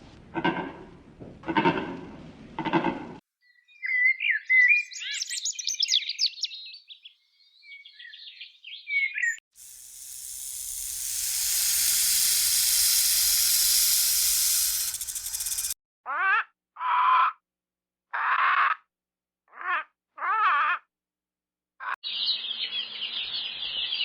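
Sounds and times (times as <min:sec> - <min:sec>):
steady high hiss: 0:09.6 - 0:15.8.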